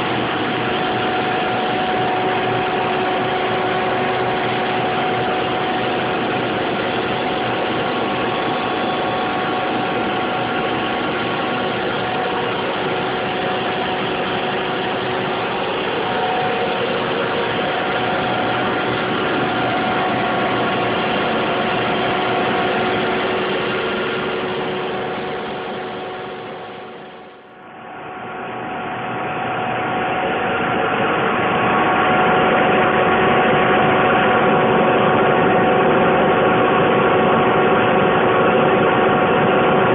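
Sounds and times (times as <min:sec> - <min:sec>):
compressor rushing with steady tones: 0:00.0 - 0:39.9.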